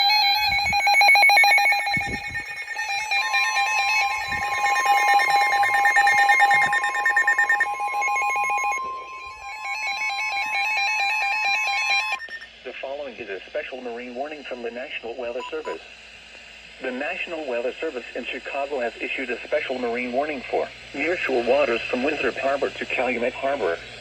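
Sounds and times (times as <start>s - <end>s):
rapid electronic alarm beeping: 0.0s - 12.5s, 15.4s - 15.8s
steady single-pitch warning tone: 0.0s - 12.5s, 15.3s - 15.8s.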